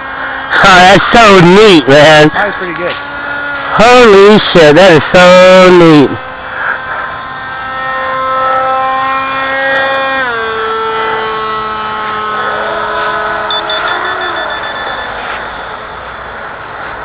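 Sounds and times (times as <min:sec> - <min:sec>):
electric motor whine: 0:00.0 - 0:17.0
second whining tone: 0:06.6 - 0:17.0.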